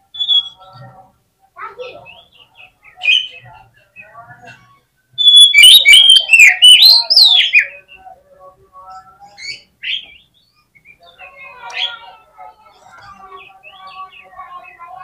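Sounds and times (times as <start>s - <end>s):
bird singing whistles: 0.1s - 0.7s, 5.2s - 8.0s
bird chirps and chattering: 5.2s - 7.4s.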